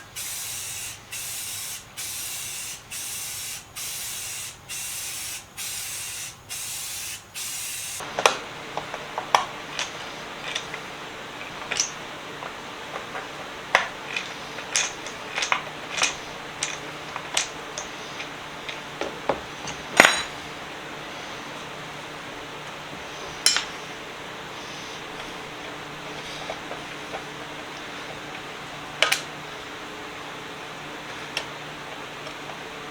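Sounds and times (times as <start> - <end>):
aerosol paint can spraying: 0.1 - 8.1
sharp clinks and light knocks: 8.2 - 20.5, 23.3 - 23.8.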